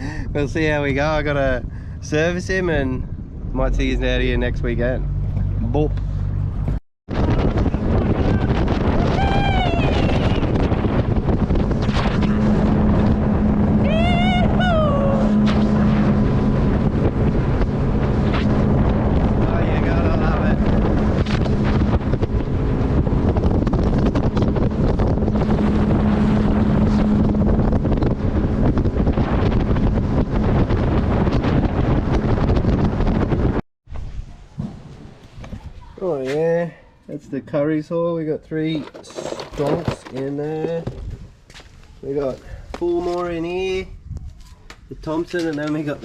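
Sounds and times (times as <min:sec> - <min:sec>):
wind buffeting microphone: 0:00.0 - 0:36.0, 0:40.7 - 0:46.0
outboard motor running: 0:05.1 - 0:33.4.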